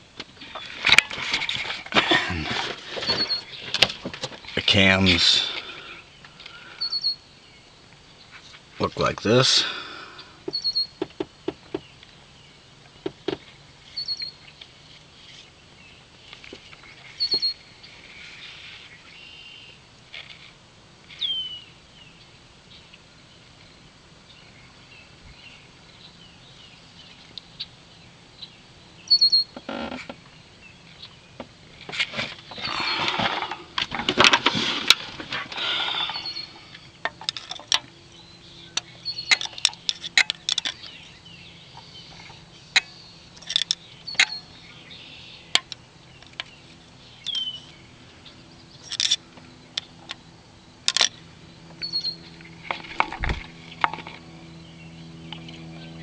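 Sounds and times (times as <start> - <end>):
birds chirping: 0.0 - 56.0
rustling handling noise: 0.2 - 5.3, 31.8 - 37.9.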